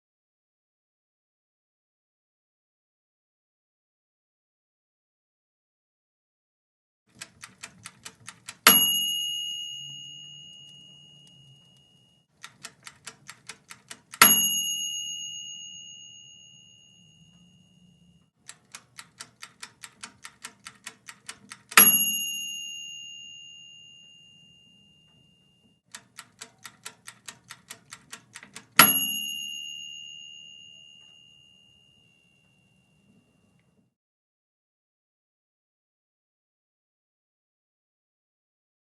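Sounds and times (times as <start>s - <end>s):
timer ticking: 7.1s - 17.6s, 18.4s - 24.2s, 25.9s - 30.1s
timer bell ding: 8.7s - 12.3s, 14.2s - 18.3s, 21.8s - 25.8s, 28.8s - 33.5s.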